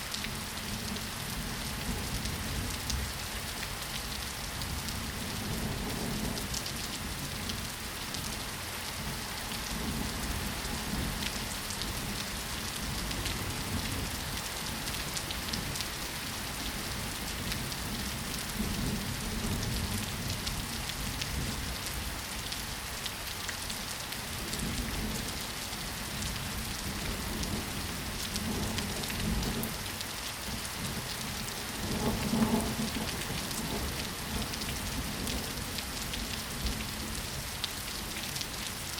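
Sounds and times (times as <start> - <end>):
rain drops ticking: 9.0 - 38.9.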